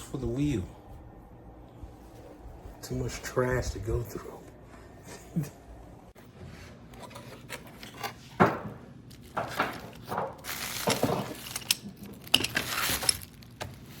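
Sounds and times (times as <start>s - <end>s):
packaging rustling: 9.1s - 14.0s
small hard objects clattering: 9.2s - 13.8s.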